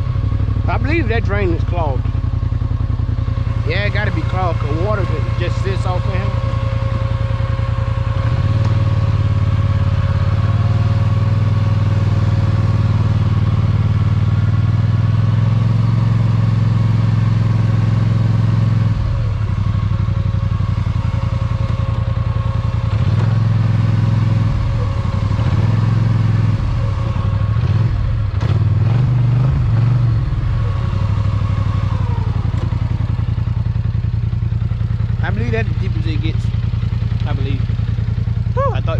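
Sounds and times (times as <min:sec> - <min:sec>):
atv engine revving: 0:00.0 - 0:38.9.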